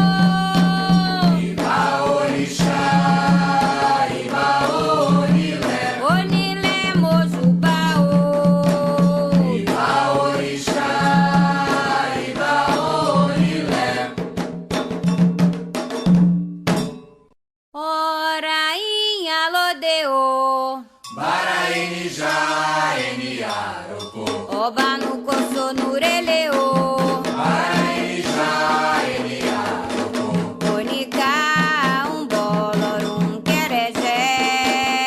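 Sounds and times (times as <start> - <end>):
lone voice singing: 0.0 - 14.1
voices singing chant: 0.0 - 14.2, 21.1 - 33.3
percussion: 0.0 - 17.4, 20.8 - 35.0
bell-like strikes: 16.0 - 17.3.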